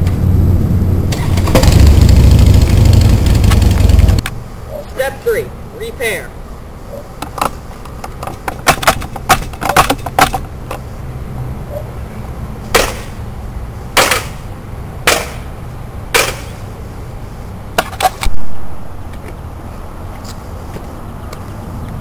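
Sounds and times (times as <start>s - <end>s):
sharp cracks: 1.1s - 4.4s, 12.7s - 13.2s, 14.0s - 14.4s, 15.0s - 15.5s, 16.1s - 16.6s.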